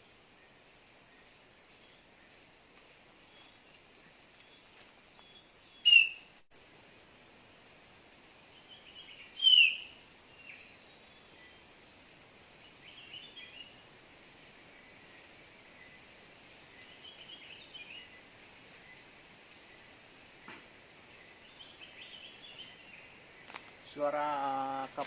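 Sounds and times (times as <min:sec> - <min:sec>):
steady background hiss: 0:00.0 - 0:25.0
bird chirps falling in pitch: 0:05.8 - 0:06.3, 0:09.4 - 0:09.9.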